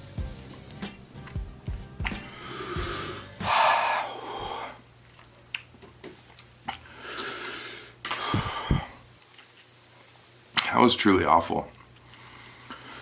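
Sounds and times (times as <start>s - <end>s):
man breathing hard through mouth: 2.2s - 4.8s, 6.9s - 9.0s.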